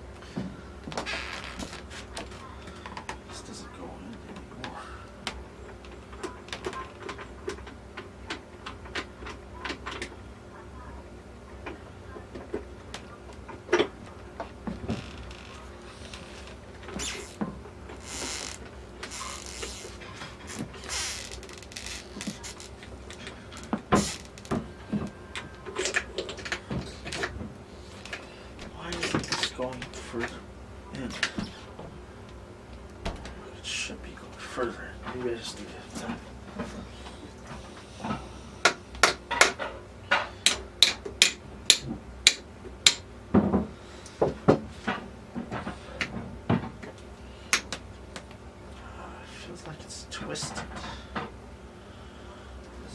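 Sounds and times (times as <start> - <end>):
hammer tapping on metal: 38.6 - 43.0.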